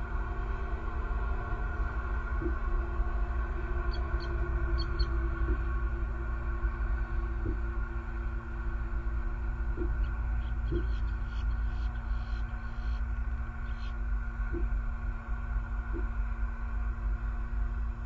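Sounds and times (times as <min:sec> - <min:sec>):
electrical hum: 0:00.0 - 0:18.0
low rumble: 0:00.0 - 0:18.0.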